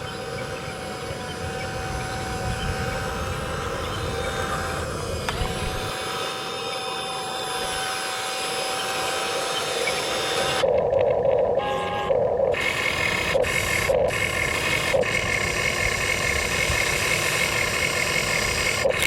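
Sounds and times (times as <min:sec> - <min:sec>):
heavy machine engine running: 0:00.0 - 0:19.0
steady whine: 0:00.0 - 0:19.0.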